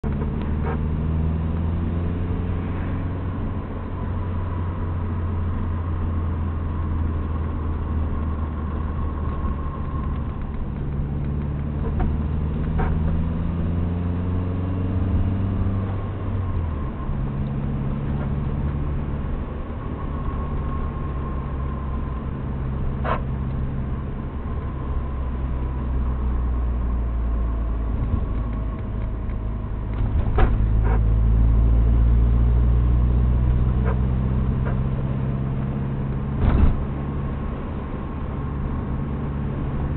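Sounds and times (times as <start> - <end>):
car engine running: 0.0 - 39.9
road noise: 0.0 - 39.9.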